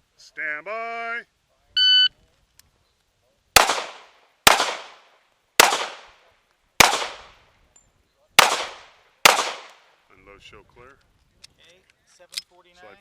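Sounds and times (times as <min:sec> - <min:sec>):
pistol shots with echo: 0:03.6 - 0:06.2, 0:06.8 - 0:07.4, 0:08.4 - 0:09.8.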